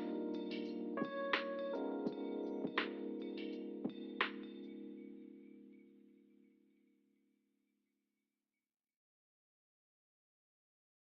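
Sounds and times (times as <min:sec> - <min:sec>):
music held chord: 0:00.0 - 0:06.2.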